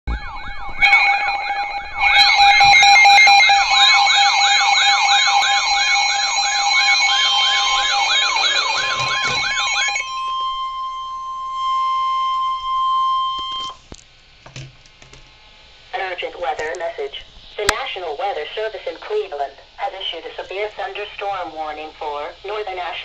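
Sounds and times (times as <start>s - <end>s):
warbling siren: 0.0s - 13.8s.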